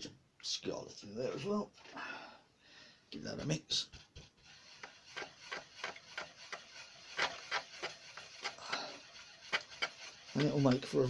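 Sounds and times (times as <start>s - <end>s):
paintbrush scrubbing a palette: 3.4s - 11.0s.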